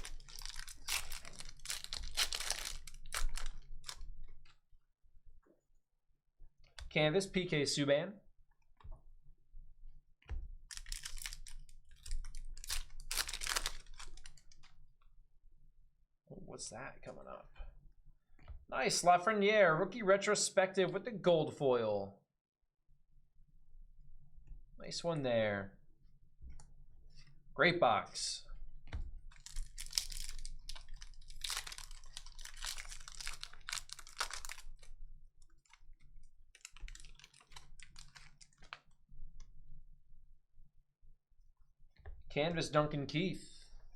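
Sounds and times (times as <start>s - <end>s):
trading cards rustling and flicking: 0.0s - 4.4s, 10.7s - 14.7s, 28.9s - 34.9s
plastic packaging crinkling: 0.0s - 4.5s, 10.7s - 14.6s, 29.3s - 38.9s.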